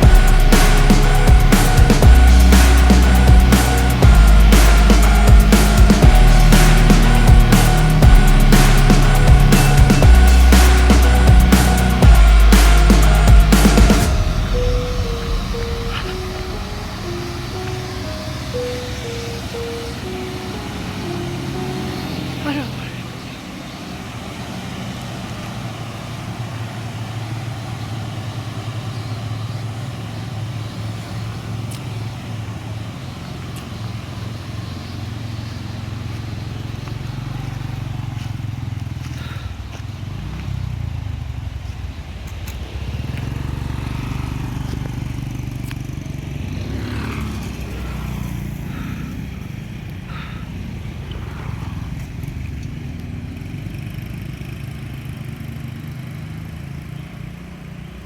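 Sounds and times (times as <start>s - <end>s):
brief higher sounds: 0.0s - 23.2s
truck diesel engine running: 0.0s - 23.6s, 43.3s - 52.4s.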